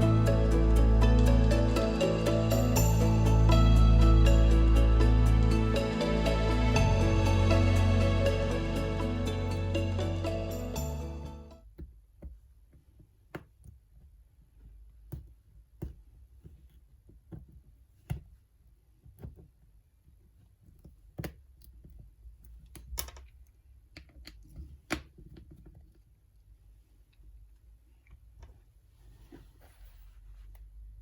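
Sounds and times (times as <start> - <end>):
background music: 0.0 - 11.6.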